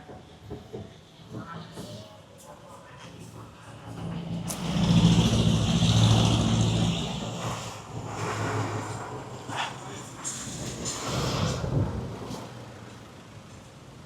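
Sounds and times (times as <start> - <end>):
vehicle engine and road noise: 0.0 - 14.0.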